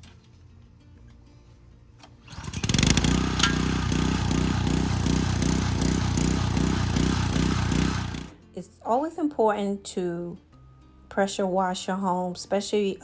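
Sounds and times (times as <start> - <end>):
pressure washer engine running: 2.2 - 8.3.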